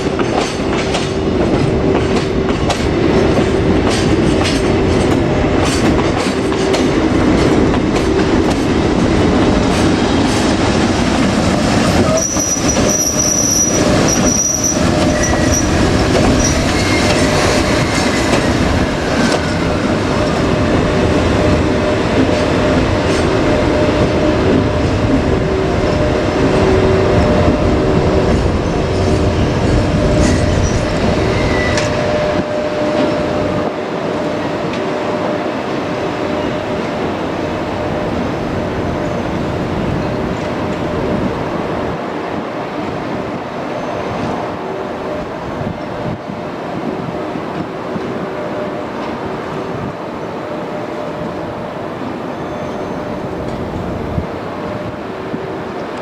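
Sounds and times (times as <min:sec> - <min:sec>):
freight train wheels clattering: 0:00.0 - 0:35.3
high-pitched wheel squeal: 0:11.8 - 0:18.6, 0:29.0 - 0:33.1, 0:52.3 - 0:53.2.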